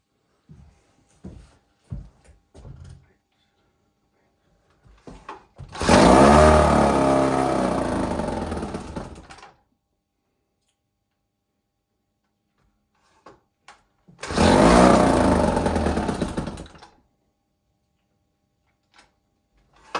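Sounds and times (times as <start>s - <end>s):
outboard motor running: 5.8s - 9.4s, 14.2s - 16.8s.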